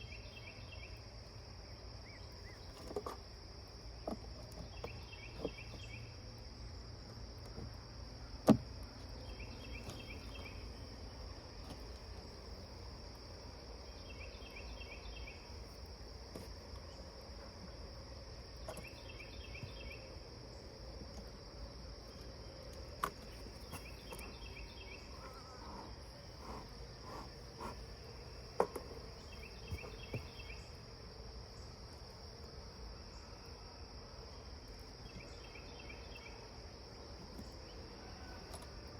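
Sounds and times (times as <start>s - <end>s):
insect pulsed call: 0.0s - 38.9s
insects droning: 0.0s - 38.9s.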